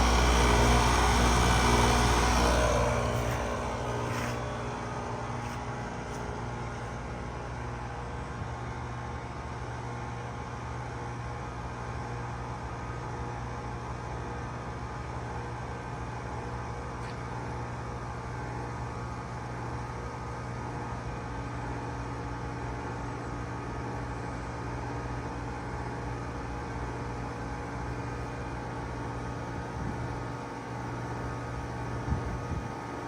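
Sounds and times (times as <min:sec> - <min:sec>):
heat pump humming: 0:00.0 - 0:09.3.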